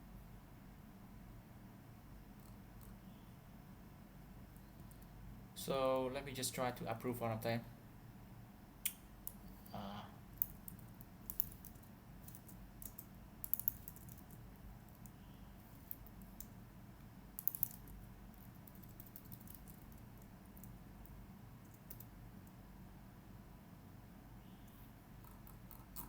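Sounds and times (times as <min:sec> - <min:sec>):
computer keyboard typing: 0:10.4 - 0:15.1, 0:17.4 - 0:20.8.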